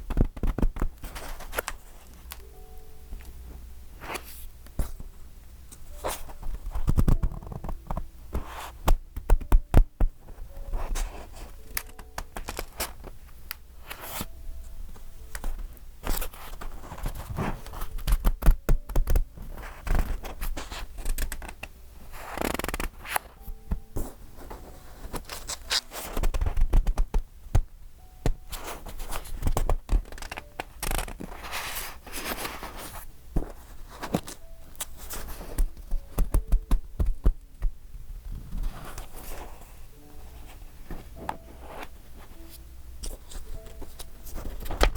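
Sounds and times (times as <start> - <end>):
paper pages turning: 0.1 - 2.4, 10.4 - 14.3, 15.3 - 27.2, 28.5 - 37.1, 38.3 - 44.9.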